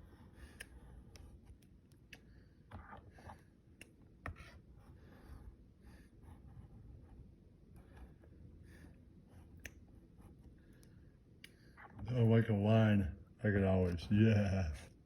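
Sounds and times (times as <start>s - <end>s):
faint clicks and taps: 0.0s - 4.6s, 9.3s - 12.2s
low room hum: 0.0s - 15.0s.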